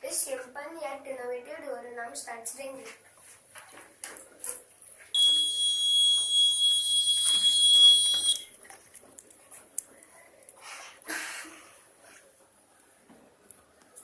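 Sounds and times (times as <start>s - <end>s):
high-pitched buzzer tone: 5.2s - 8.4s.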